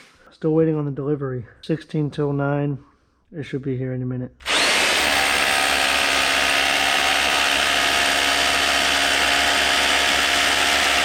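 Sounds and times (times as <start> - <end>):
power drill running: 4.4 - 11.0.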